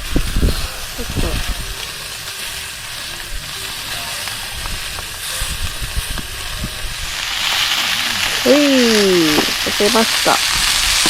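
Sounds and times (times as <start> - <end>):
meat sizzling on griddle: 0.0 - 11.0.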